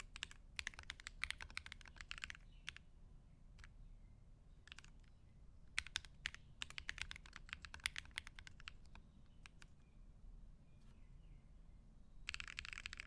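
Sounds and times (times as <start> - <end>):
mechanical keyboard typing: 0.0 - 2.8, 4.6 - 5.1, 5.7 - 9.7, 12.2 - 13.0.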